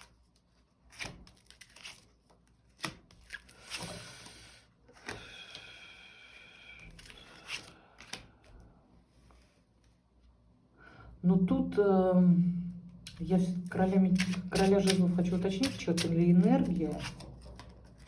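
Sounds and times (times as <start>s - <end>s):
cards rustling: 0.0s - 4.0s, 6.8s - 8.6s, 13.1s - 18.0s
card clicks: 13.1s - 17.2s.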